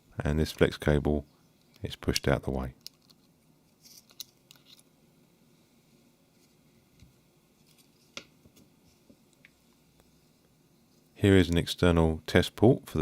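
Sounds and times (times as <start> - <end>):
faint clicks of plastic parts: 1.6 - 4.9.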